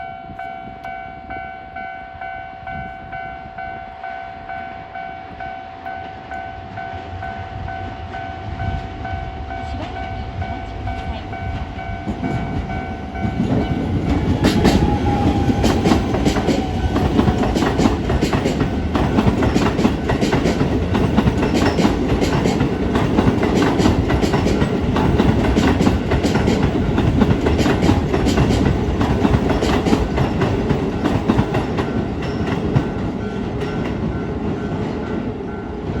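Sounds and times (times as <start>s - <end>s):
crossing warning bell: 0.0s - 36.0s
train running noise: 0.0s - 36.0s
train wheel clatter: 9.8s - 36.0s.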